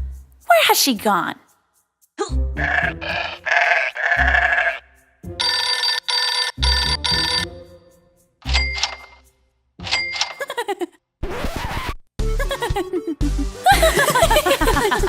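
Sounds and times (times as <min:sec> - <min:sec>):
cartoon background music: 0:00.0 - 0:09.4, 0:10.3 - 0:15.0.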